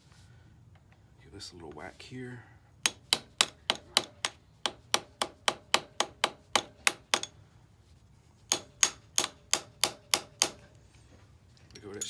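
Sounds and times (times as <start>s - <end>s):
hammer tapping on metal: 2.8s - 7.4s, 8.5s - 10.6s.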